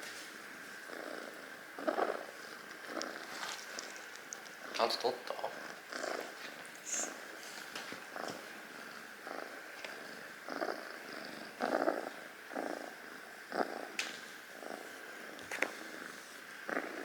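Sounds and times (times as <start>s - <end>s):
kitten purring: 0.1s - 17.0s.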